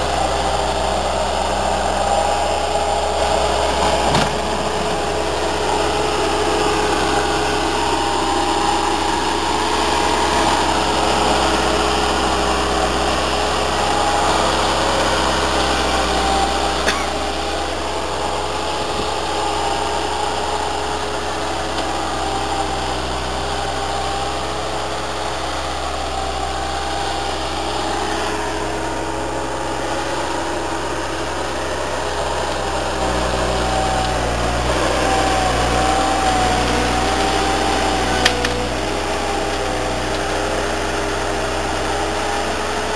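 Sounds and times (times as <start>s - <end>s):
diesel engine running: 0.0s - 42.9s
high whine: 2.1s - 17.8s.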